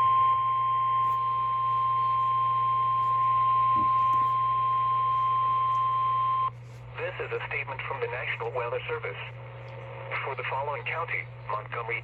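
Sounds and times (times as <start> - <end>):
steady high warning beep: 0.0 - 6.5
low hum: 0.0 - 10.5.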